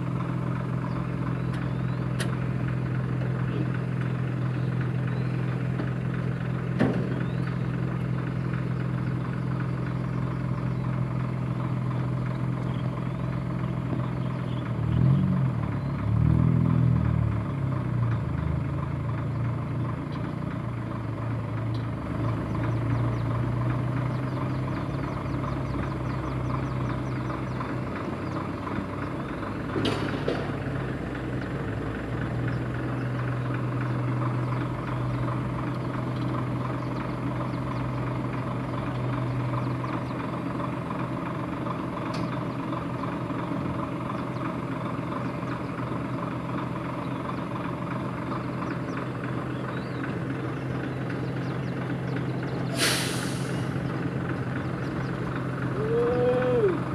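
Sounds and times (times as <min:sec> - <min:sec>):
diesel engine running: 0:00.0 - 0:56.9
short hiss: 0:52.8 - 0:53.7.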